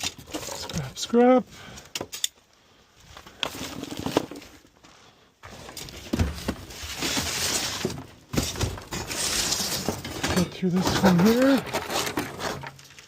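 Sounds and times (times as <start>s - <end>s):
junk items clattering: 0.0s - 1.0s, 3.2s - 4.7s, 5.4s - 13.0s
rustling: 2.7s - 13.0s.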